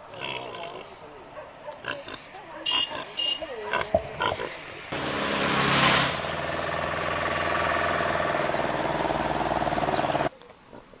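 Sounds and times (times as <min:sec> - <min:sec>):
loud rushing noise: 0:04.9 - 0:09.1
small engine running: 0:05.0 - 0:10.3.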